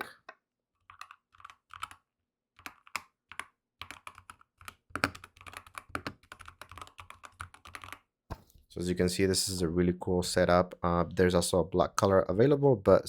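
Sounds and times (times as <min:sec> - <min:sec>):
keyboard typing: 0:00.9 - 0:02.0, 0:02.6 - 0:08.0.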